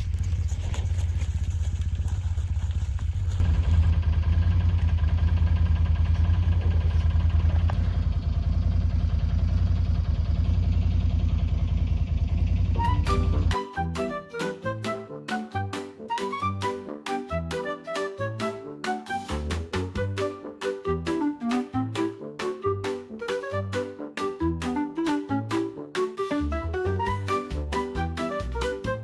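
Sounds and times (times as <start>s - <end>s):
atv engine running: 0.0s - 13.6s
music: 12.8s - 29.0s.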